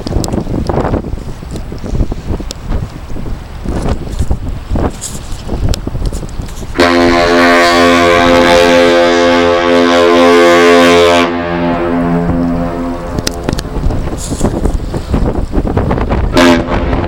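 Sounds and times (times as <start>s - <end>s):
ship horn blast: 6.7s - 14.5s, 16.2s - 17.0s.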